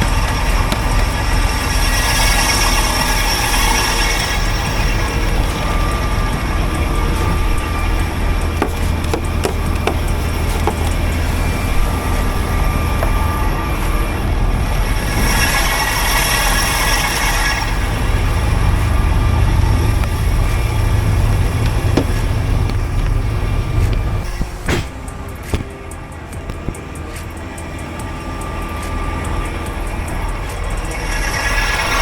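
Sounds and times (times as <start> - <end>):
vehicle engine rumbling: 0.0 - 32.0.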